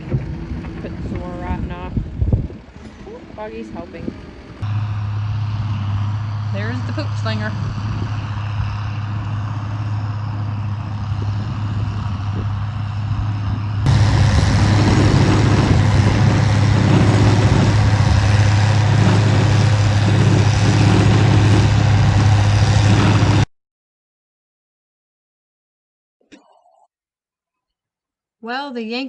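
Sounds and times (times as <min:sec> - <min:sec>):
tractor diesel engine: 0:00.0 - 0:23.5
manure spreader rattling: 0:13.9 - 0:23.4.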